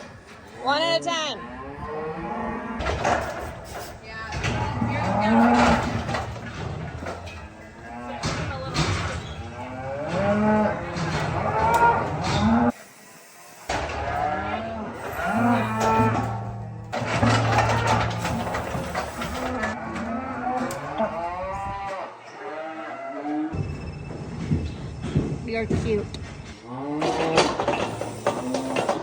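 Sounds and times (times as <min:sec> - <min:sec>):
cattle mooing: 0:01.3 - 0:03.2, 0:04.5 - 0:06.7, 0:07.3 - 0:12.7, 0:13.8 - 0:23.6, 0:26.6 - 0:28.9.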